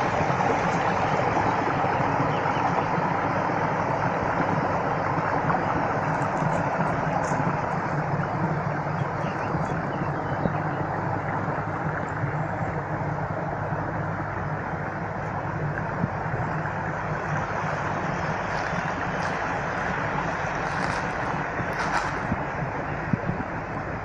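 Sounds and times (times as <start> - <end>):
rushing water: 0.0 - 24.0.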